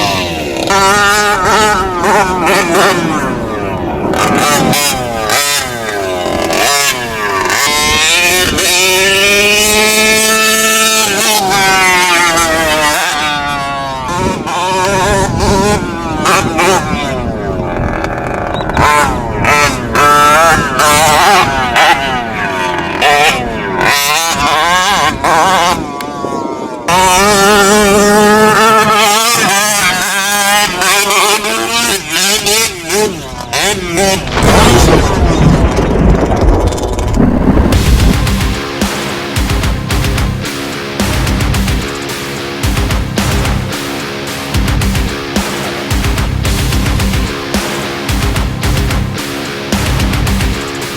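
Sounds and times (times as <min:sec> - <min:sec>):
rc truck gas engine revving: 0:00.0 - 0:40.3.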